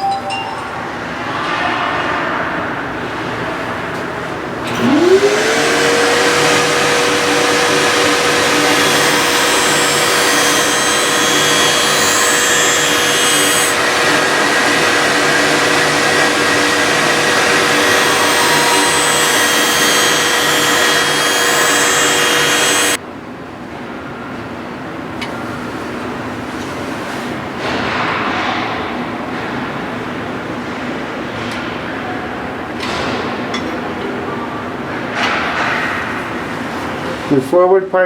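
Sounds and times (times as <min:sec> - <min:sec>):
skate-sharpening grinder whine: 0:04.7 - 0:23.0
blade grinding hiss: 0:06.0 - 0:23.0.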